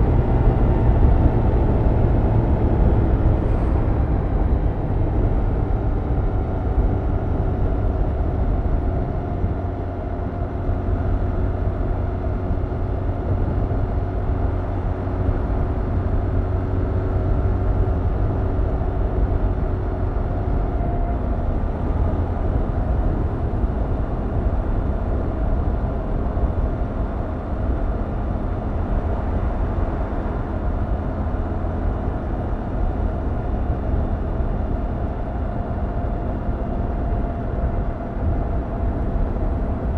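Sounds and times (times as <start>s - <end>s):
motorcycle engine and exhaust running: 0.0s - 39.9s.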